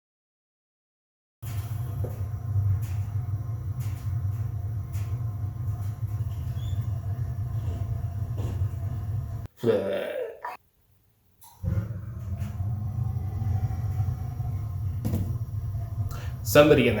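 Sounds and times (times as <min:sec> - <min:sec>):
steady low rumble: 0:01.4 - 0:09.5, 0:11.6 - 0:17.0
throat sound: 0:09.6 - 0:10.6.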